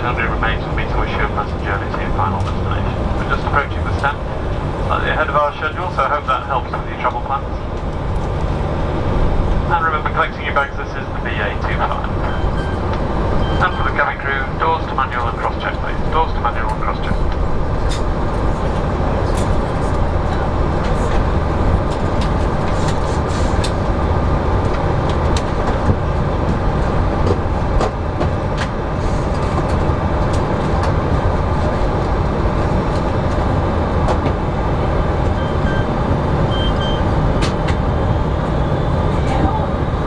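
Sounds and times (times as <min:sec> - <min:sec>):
vehicle interior rumble: 0:00.0 - 0:06.2.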